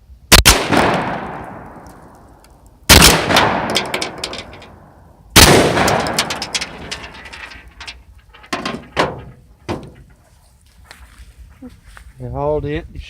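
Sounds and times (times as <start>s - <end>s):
shotgun shots: 0.3s - 2.1s, 2.9s - 4.3s, 5.4s - 7.0s.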